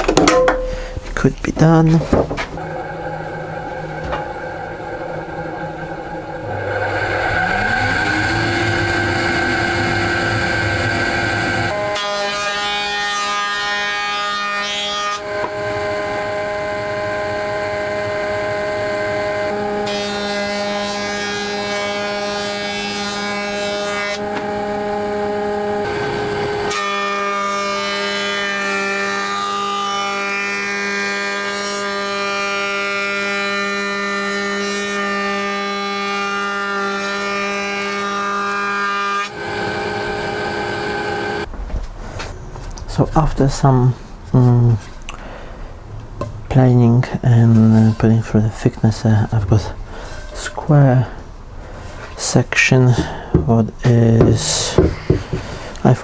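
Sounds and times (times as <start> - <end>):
electric motor whining and humming: 2.6 - 12.0, 15.2 - 20.8, 21.9 - 27.5, 35.0 - 41.5.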